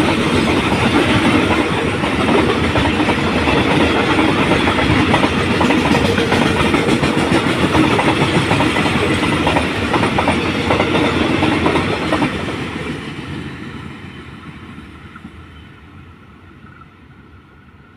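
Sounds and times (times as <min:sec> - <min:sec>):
train wheels clattering over rail joints: 0:00.0 - 0:13.5.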